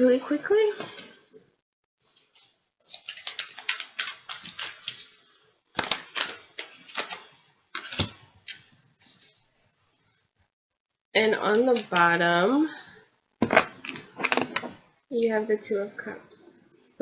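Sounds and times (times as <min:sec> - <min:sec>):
cards being shuffled: 0:00.8 - 0:01.2, 0:02.0 - 0:10.0, 0:11.5 - 0:12.3, 0:13.4 - 0:14.8.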